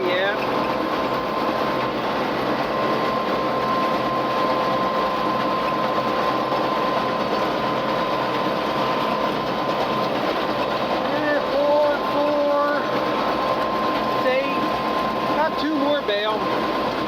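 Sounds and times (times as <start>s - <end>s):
high machine whine: 0.0s - 17.0s
tractor and baler running: 0.0s - 17.0s.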